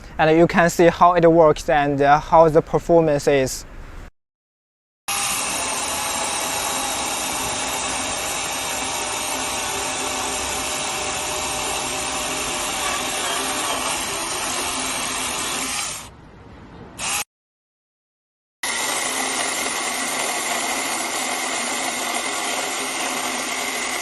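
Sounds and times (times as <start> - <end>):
electric mini chainsaw running: 5.1 - 16.1, 17.0 - 17.3, 18.6 - 24.0.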